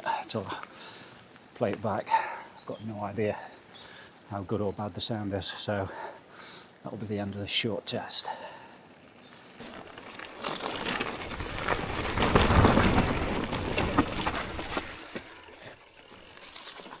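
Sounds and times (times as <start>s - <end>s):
rustles and clicks: 9.3s - 17.0s.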